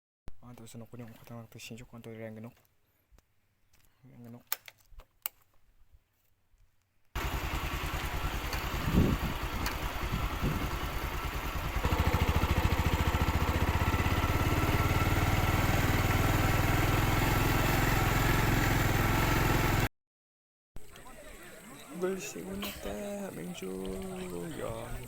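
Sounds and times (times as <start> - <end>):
small engine running: 7.2 - 19.9.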